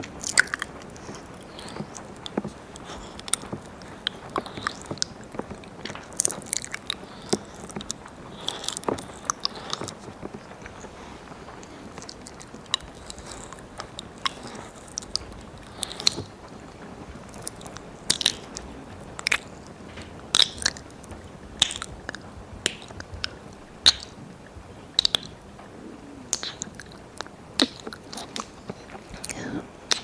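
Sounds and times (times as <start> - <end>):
wet mouth licking and smacking: 0.1 - 10.1, 11.7 - 16.4, 17.2 - 19.6, 20.3 - 24.2, 24.9 - 25.4, 26.3 - 30.0.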